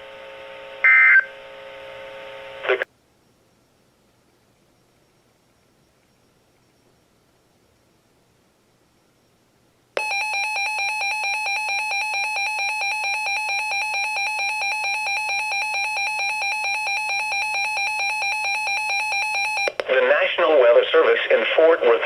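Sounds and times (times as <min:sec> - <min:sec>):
weather radio alarm beeping: 0:10.0 - 0:20.3.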